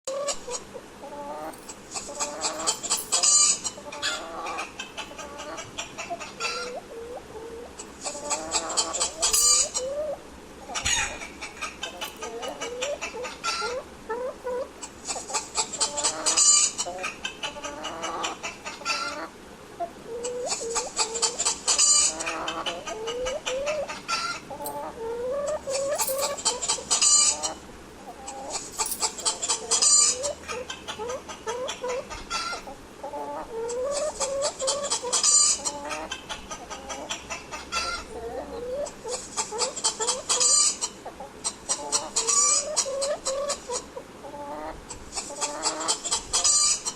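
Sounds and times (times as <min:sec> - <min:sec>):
hens clucking: 0:00.1 - 0:46.9
rapid high-pitched hen calls: 0:00.1 - 0:46.9.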